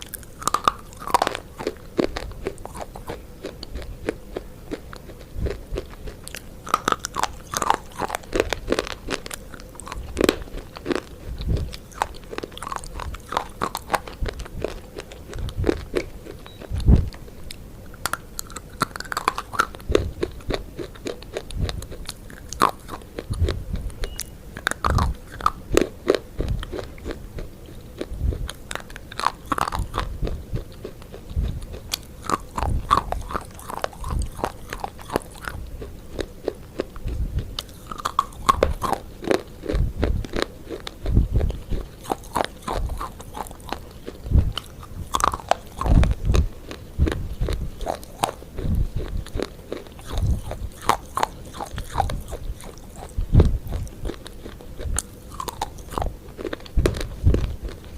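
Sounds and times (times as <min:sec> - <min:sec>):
crunchy chewing: 0:00.0 - 0:57.9.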